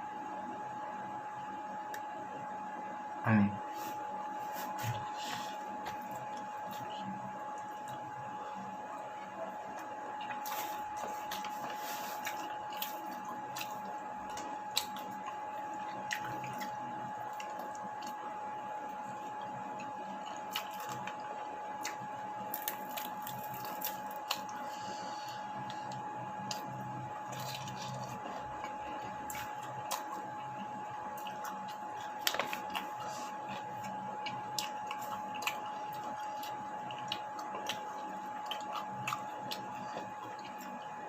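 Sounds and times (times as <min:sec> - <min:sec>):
person chewing food: 0:04.6 - 0:41.0.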